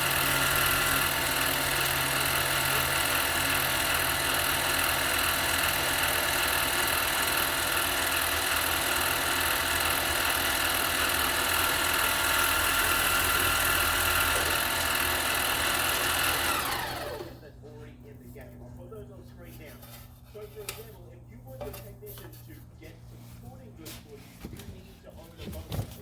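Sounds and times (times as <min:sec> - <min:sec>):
lathe running: 0:00.0 - 0:17.4.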